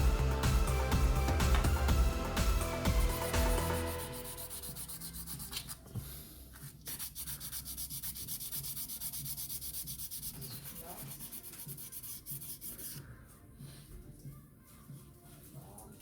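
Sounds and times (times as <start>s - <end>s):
sandpaper rubbing: 3.0s - 5.9s, 6.6s - 13.0s.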